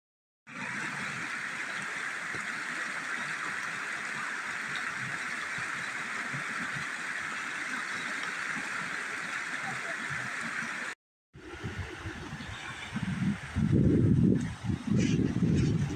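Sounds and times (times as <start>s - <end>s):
stream flowing: 0.5s - 15.9s.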